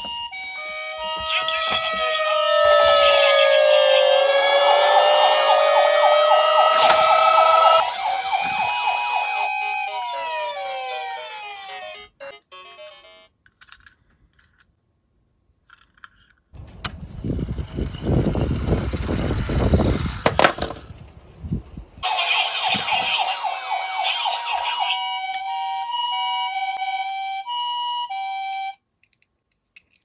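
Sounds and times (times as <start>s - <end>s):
electronic siren: 0.5s - 12.1s, 22.0s - 28.8s.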